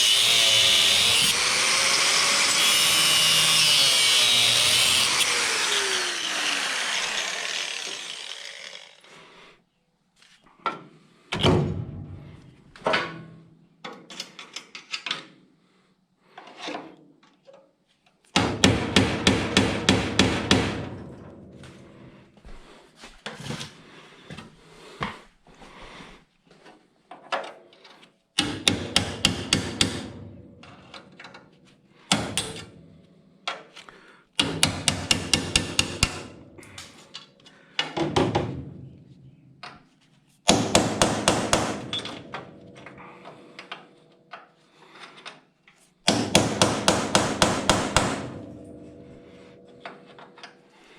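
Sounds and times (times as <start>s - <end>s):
power tool spinning down: 0.0s - 9.1s
hammer blows on sheet metal: 46.1s - 50.2s.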